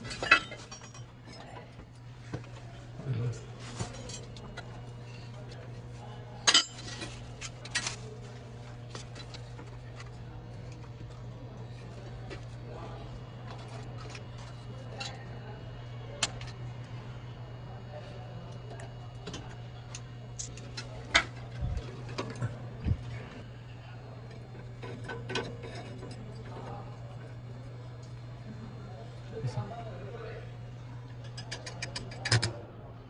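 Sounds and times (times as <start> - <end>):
steady low hum: 0.0 - 33.0
metal tools clicking and knocking: 0.1 - 1.5, 6.5 - 7.8, 31.2 - 32.5.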